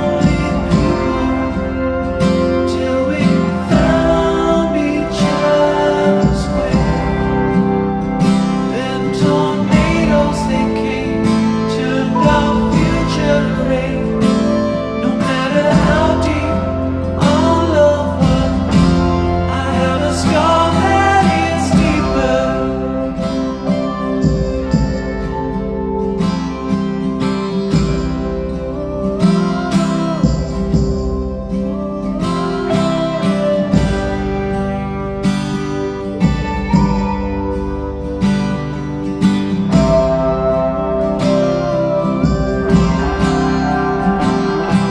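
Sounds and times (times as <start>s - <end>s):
gliding melody line: 0.0s - 44.9s
song with acoustic guitar: 0.0s - 44.9s.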